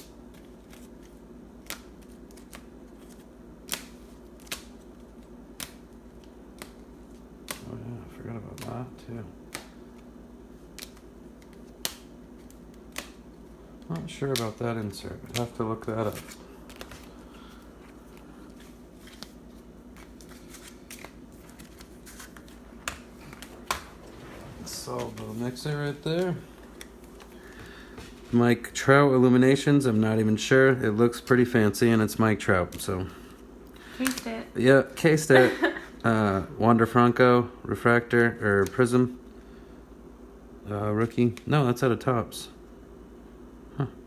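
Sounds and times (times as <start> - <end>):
cards clicking and tapping: 0.0 - 7.7, 8.3 - 8.9, 9.5 - 10.1, 10.7 - 17.2, 18.1 - 24.0
low steady hum: 0.0 - 44.0
cards sliding and clicking: 17.8 - 28.2.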